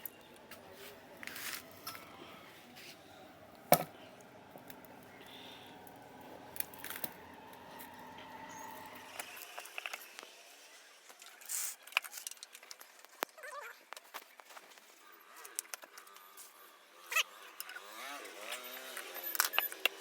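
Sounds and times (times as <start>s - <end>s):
low background hum: 0.0s - 11.0s.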